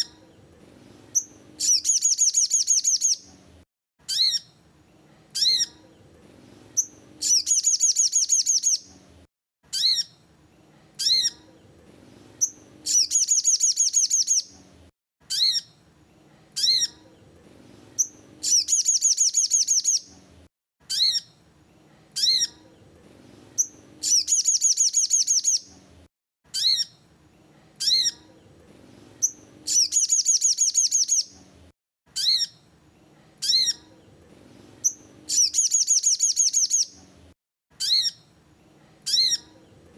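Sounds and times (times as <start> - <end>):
bird chirps and rattling trill: 1.1 - 3.3, 4.0 - 4.6, 5.3 - 5.8, 6.7 - 8.9, 9.7 - 10.2, 11.0 - 11.5, 12.3 - 14.5, 15.3 - 15.8, 16.6 - 17.2, 17.9 - 20.1, 20.8 - 21.4, 22.2 - 22.8, 23.5 - 25.7, 26.5 - 27.0, 27.8 - 28.3, 29.1 - 31.4, 32.1 - 32.7, 33.4 - 34.1, 34.8 - 37.0, 37.8 - 38.3, 39.0 - 39.8.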